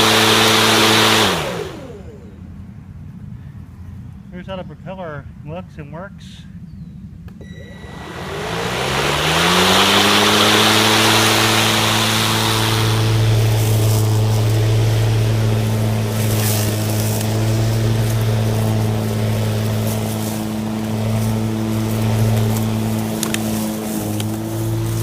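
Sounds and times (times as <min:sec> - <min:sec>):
electric lawn mower humming: 0:00.0 - 0:02.6, 0:07.4 - 0:25.0.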